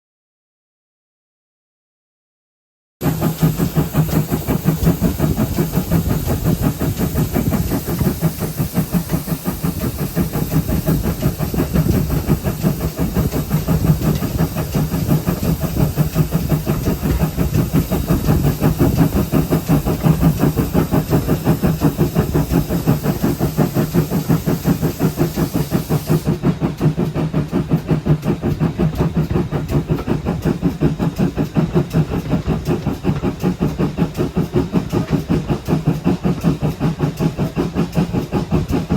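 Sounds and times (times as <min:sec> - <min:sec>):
steam hiss: 0:03.0 - 0:26.6
steam locomotive rumbling: 0:03.0 - 0:38.9.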